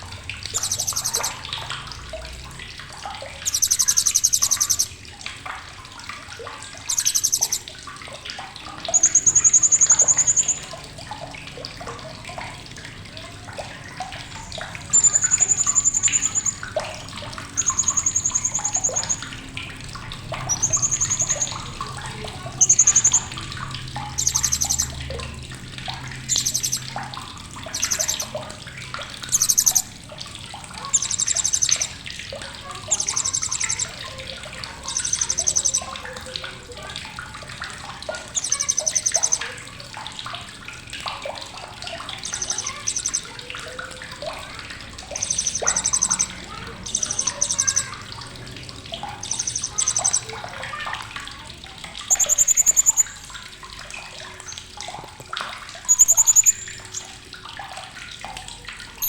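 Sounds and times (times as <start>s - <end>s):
parrot buzzy chattering: 0.5s - 1.5s, 3.4s - 5.0s, 6.8s - 7.7s, 8.8s - 10.8s, 14.2s - 19.5s, 20.1s - 25.0s, 26.2s - 27.0s, 27.6s - 28.6s, 29.2s - 30.0s, 30.6s - 36.6s, 38.2s - 39.8s, 41.6s - 50.8s, 52.0s - 53.4s, 55.8s - 57.2s
parrot high thin whistles: 0.6s - 1.4s, 3.4s - 4.9s, 6.9s - 7.7s, 27.7s - 28.3s, 52.1s - 53.2s, 55.9s - 57.0s.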